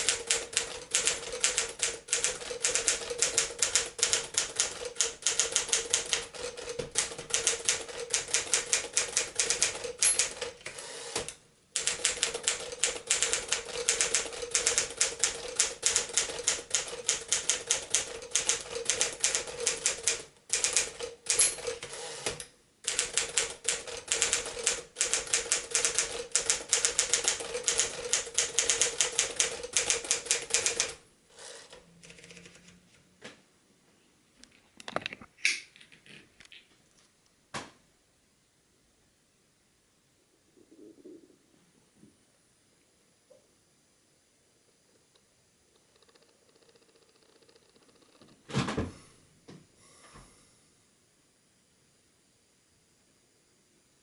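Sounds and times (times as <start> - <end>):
typewriter keys clattering: 0.0 - 10.6, 11.8 - 31.0
typewriter bell ring: 7.4 - 10.6, 11.8 - 21.8.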